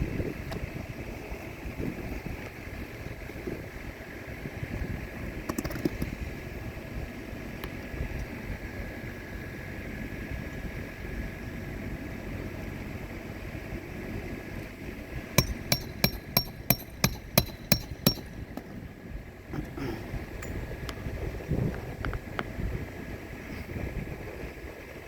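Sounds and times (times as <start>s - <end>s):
low outdoor rumble: 0.0s - 25.0s
hammer striking nail: 15.4s - 18.4s.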